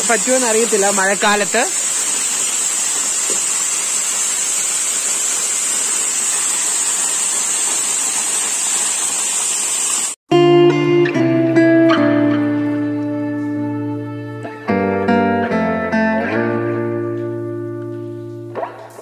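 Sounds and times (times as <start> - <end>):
guitar music: 10.3 - 19.0.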